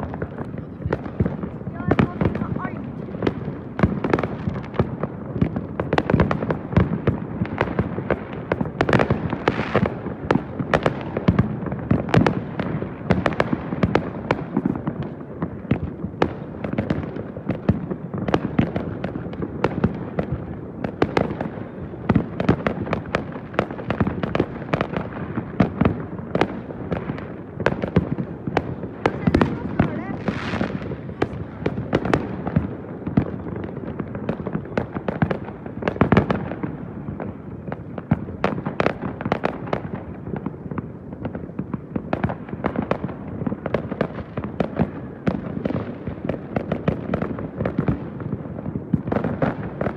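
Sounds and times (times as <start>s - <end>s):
fireworks bangs and crackles: 0.0s - 49.9s.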